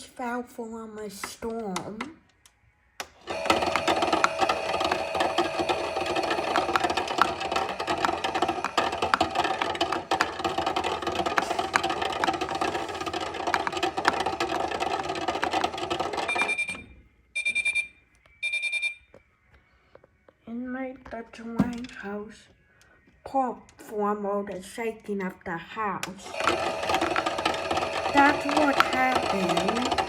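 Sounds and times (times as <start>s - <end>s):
toy washing machine whirring: 3.0s - 16.8s, 26.2s - 30.0s.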